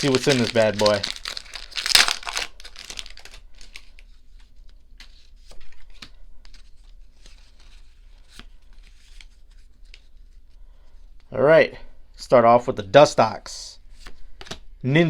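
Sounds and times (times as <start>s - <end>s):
foil wrapper crinkling and tearing: 0.0s - 4.0s.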